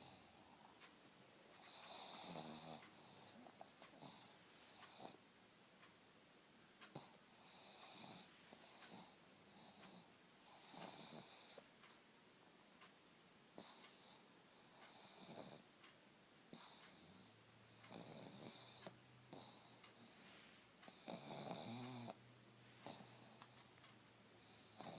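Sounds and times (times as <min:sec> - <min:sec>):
dog snoring and wheezing: 0:01.6 - 0:05.2, 0:06.9 - 0:11.6, 0:13.6 - 0:15.6, 0:16.5 - 0:20.2, 0:20.8 - 0:22.2, 0:22.8 - 0:23.5, 0:24.4 - 0:24.9.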